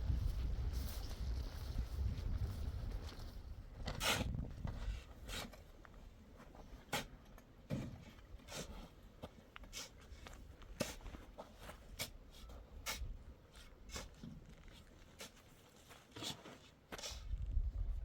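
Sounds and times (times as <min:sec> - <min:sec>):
light knocks and scrapes: 0:06.8 - 0:17.4.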